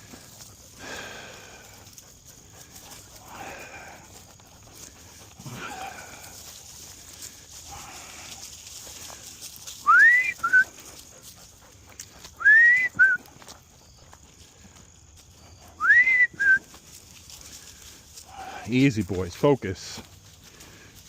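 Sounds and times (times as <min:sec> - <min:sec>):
person whistling: 0:09.8 - 0:10.7, 0:12.4 - 0:13.2, 0:15.8 - 0:16.7.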